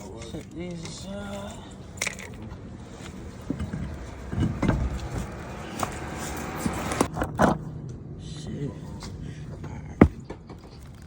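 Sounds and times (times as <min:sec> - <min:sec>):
metal tools clanking: 0:00.0 - 0:07.1.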